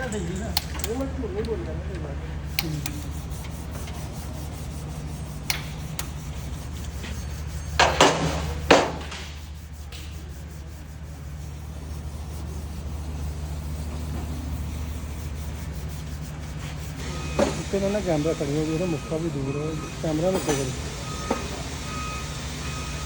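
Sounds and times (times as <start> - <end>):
low machine hum: 0.0 - 23.0
metallic knocks and clanks: 7.7 - 9.4.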